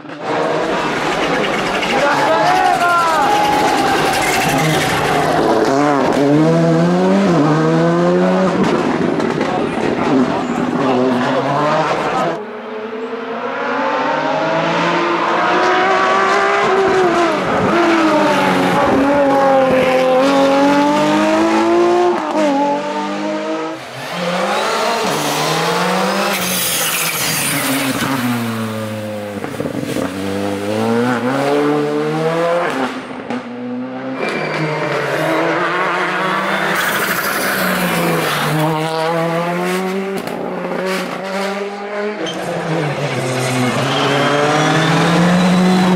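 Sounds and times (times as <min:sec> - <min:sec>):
rally car engines revving: 0:00.0 - 0:45.9
tyre squeal: 0:01.0 - 0:05.8, 0:24.0 - 0:28.3, 0:34.2 - 0:35.4, 0:36.3 - 0:38.6, 0:43.3 - 0:45.9.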